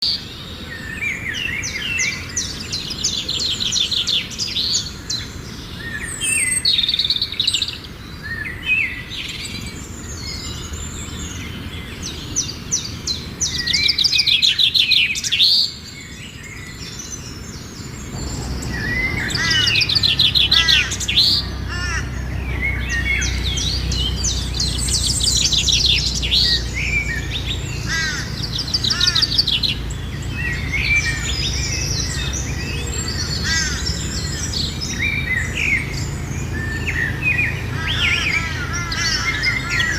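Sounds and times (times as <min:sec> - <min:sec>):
many birds chirping and trilling: 0:00.0 - 0:39.9
low steady rumble: 0:16.7 - 0:39.9.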